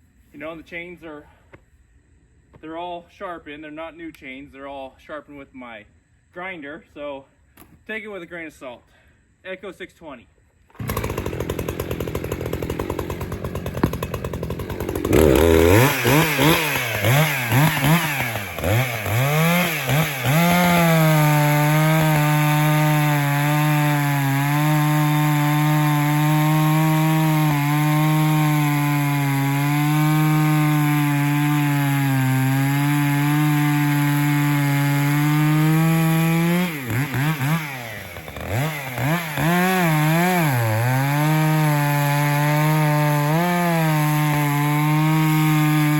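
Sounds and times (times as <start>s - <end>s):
chainsaw cutting log: 10.7s - 45.9s.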